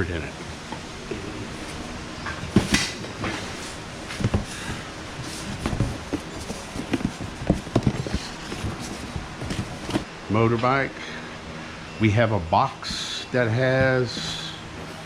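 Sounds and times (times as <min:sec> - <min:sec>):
boxes knocking and thumping: 0:02.3 - 0:10.1, 0:12.8 - 0:15.0.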